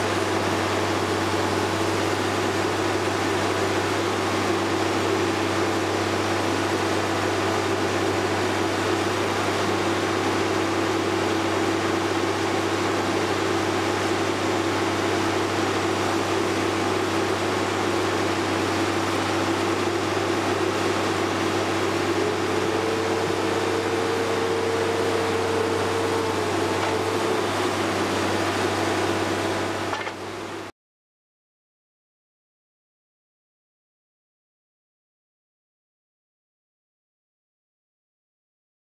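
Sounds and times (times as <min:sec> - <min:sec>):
baler diesel engine droning: 0:00.0 - 0:30.7.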